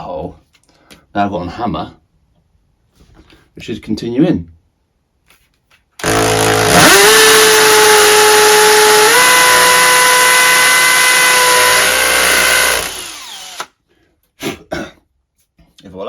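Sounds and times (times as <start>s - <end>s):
hammer drill boring into wall: 6.0s - 13.8s.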